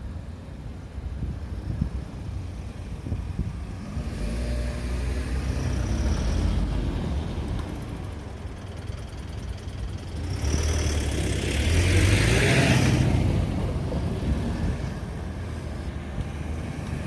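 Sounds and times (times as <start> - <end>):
car driving past: 10.2 - 17.0.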